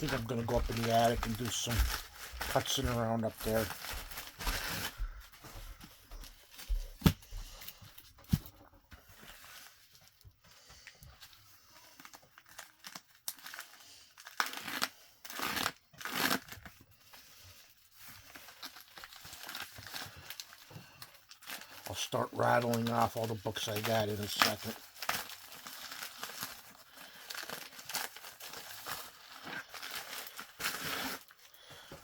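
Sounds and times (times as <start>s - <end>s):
packaging crinkling and tearing: 0.0s - 5.6s, 6.4s - 32.0s.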